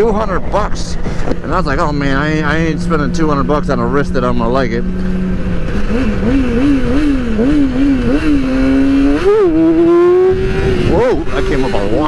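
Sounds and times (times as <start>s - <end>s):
motorcycle engine revving: 0.0s - 12.0s
wind rush: 6.8s - 12.0s.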